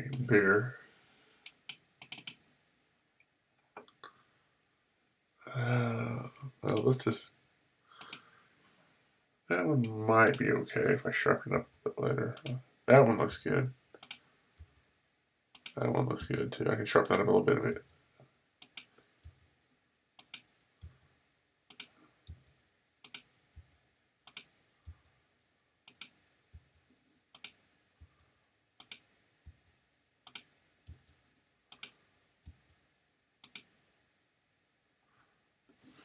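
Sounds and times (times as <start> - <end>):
computer mouse clicking: 1.5 - 2.4, 6.7 - 6.9, 8.0 - 8.4, 12.4 - 12.6, 14.0 - 14.8, 15.6 - 16.4, 18.6 - 19.5, 20.2 - 21.1, 21.7 - 25.1, 25.9 - 33.8.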